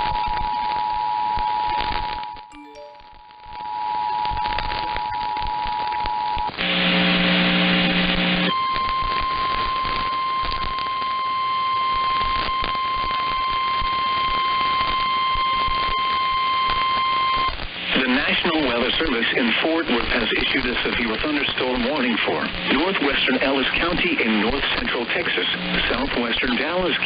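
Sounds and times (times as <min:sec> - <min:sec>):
crackly static: 0:00.0 - 0:02.5, 0:03.5 - 0:27.0
two-tone alert signal: 0:02.5 - 0:03.3.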